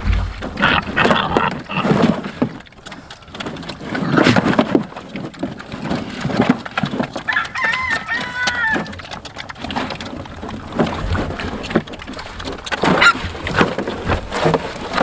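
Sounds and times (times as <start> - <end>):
pigs grunting: 0.0 - 15.0
rooster crowing: 7.3 - 9.0.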